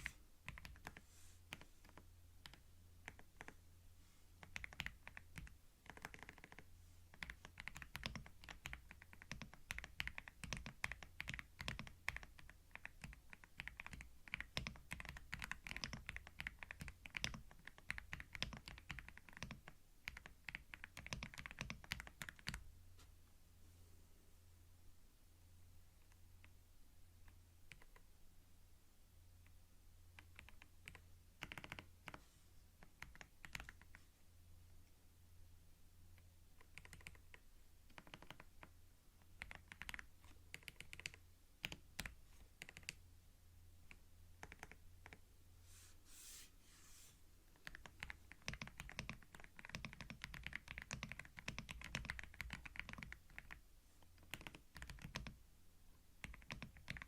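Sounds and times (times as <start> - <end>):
computer keyboard typing: 0.5 - 3.6, 4.4 - 22.6, 27.7 - 28.0, 30.2 - 32.2, 32.8 - 34.0, 36.6 - 43.0, 43.9 - 45.2, 47.6 - 55.4, 56.2 - 57.0.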